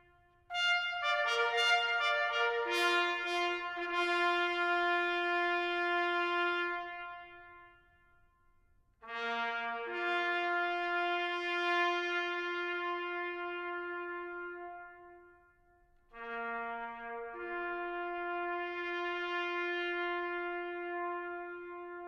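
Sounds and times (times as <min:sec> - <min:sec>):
bugle playing slow call: 0:16.2 - 0:22.0.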